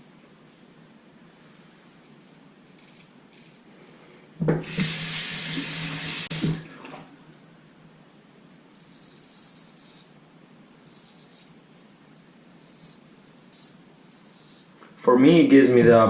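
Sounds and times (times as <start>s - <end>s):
tap water running into sink: 4.5s - 7.0s.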